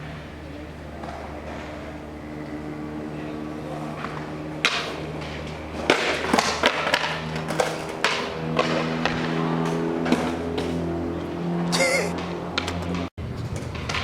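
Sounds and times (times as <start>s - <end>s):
skateboard clacking on concrete: 5.8s - 9.2s.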